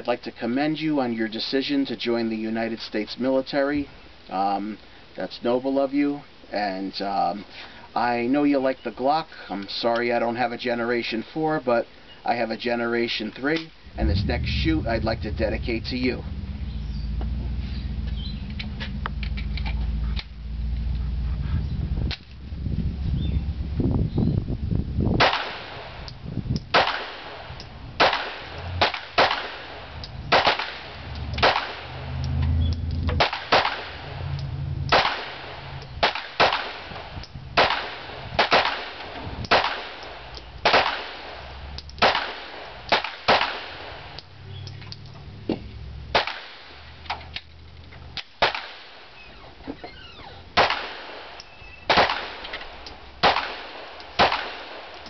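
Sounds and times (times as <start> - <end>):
pistol shots: 25.2 - 26.1, 26.7 - 32.3, 33.1 - 34.2, 34.9 - 44.2, 46.1 - 46.8, 48.4 - 49.1, 50.6 - 55.0.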